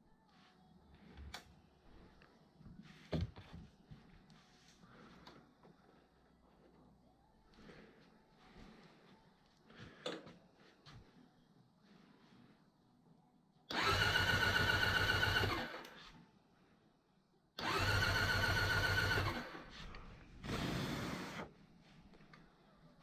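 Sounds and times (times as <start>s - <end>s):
small electric motor whirring: 13.8s - 16.0s, 17.6s - 19.6s.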